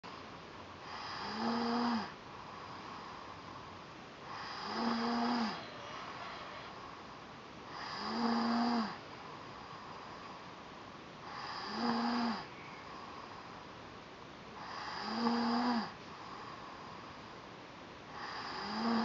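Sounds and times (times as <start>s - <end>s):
quiet breathing: 0.0s - 19.0s
child's crowing stridor breaths: 4.4s - 7.2s.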